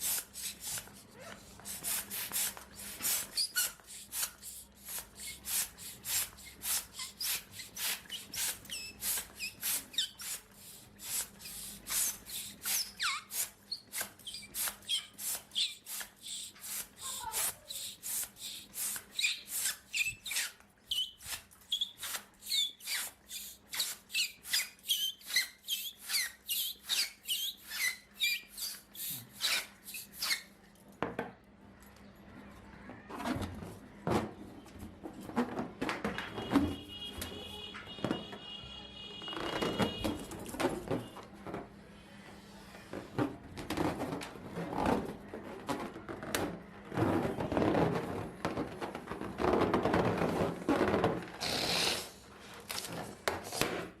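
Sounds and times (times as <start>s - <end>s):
rubber balloon squeaking: 0.0s - 30.6s, 39.2s - 41.2s, 43.2s - 52.2s.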